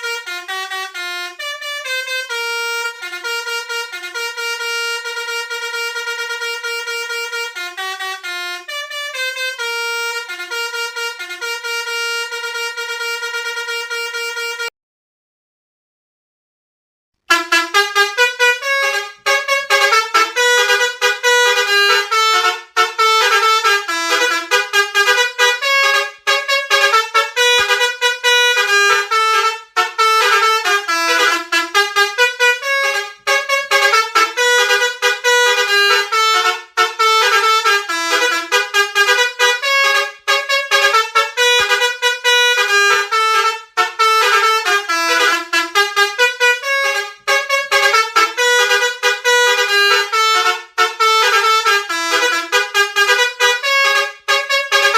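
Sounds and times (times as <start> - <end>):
multi-tone bus horn melody: 0.0 - 14.7, 17.2 - 54.9.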